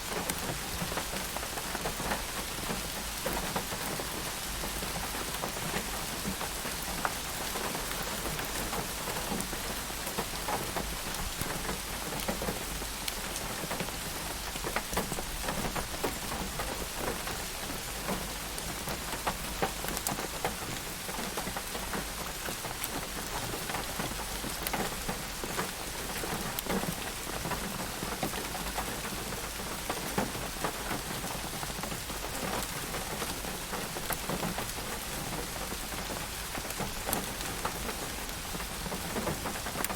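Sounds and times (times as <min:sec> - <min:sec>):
raindrops ticking on surface: 0:00.0 - 0:39.9
steady rain: 0:00.0 - 0:39.9.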